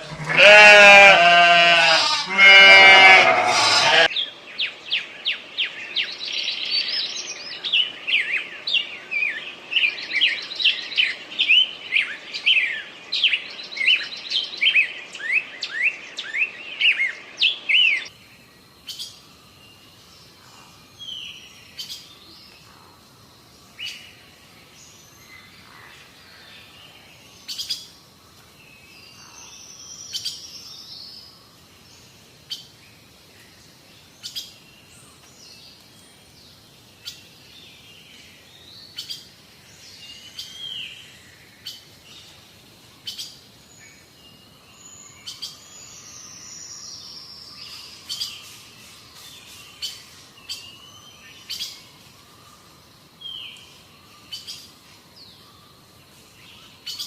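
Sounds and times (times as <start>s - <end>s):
birds chirping: 0.0s - 32.7s
faint outdoor hiss: 0.0s - 57.0s.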